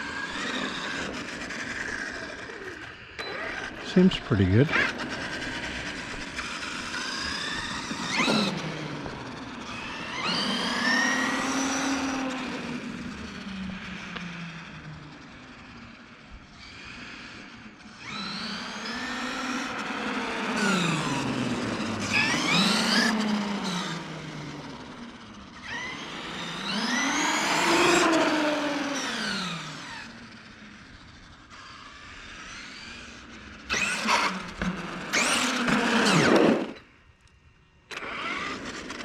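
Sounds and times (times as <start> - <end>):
rc truck motor whining: 0.0 - 39.0.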